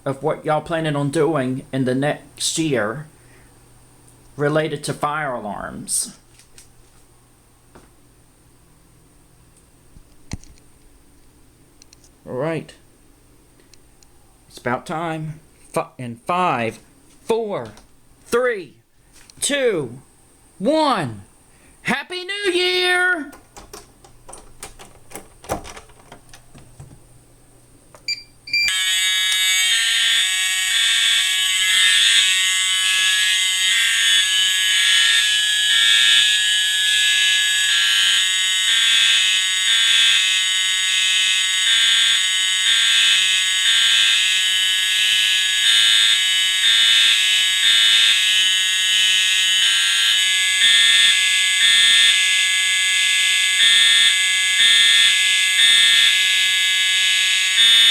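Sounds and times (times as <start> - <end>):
clicks: 23.2 - 27.0
fire alarm horns pulsing: 28.5 - 57.9.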